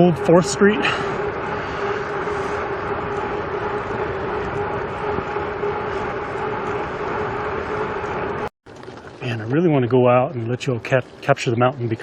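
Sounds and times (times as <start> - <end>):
rushing wind: 0.0 - 9.6
bicycle road noise: 0.0 - 12.0
steady low hum: 0.0 - 12.0.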